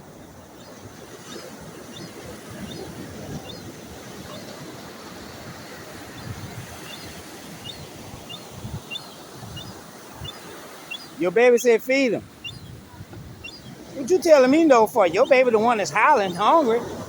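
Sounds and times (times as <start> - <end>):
surf washing on a beach: 0.0 - 17.0
wind: 0.0 - 17.0
faint high bird chirps: 0.6 - 4.5, 6.1 - 11.7, 12.3 - 13.9.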